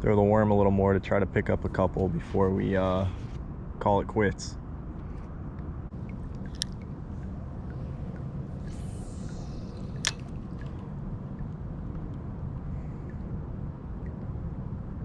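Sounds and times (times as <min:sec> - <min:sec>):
steady low rumble: 0:00.0 - 0:15.0
water dripping and splashing: 0:05.9 - 0:11.6
sharp clicks: 0:08.6 - 0:10.8.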